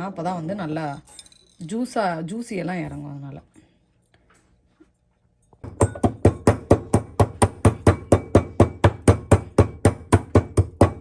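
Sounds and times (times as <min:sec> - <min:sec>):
pestle pounding in a mortar: 0:05.6 - 0:11.0.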